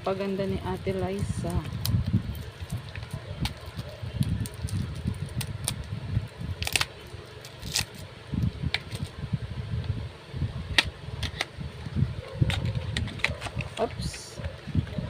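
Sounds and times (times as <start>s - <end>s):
low rumble on microphone: 0.0s - 15.0s
packaging crinkling: 1.2s - 8.1s.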